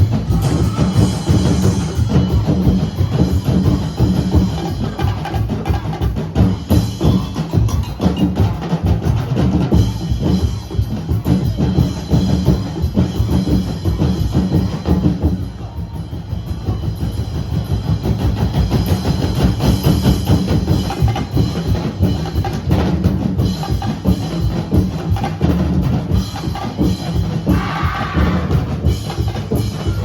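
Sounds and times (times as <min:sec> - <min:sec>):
bass and snare drum band: 0:00.0 - 0:30.0.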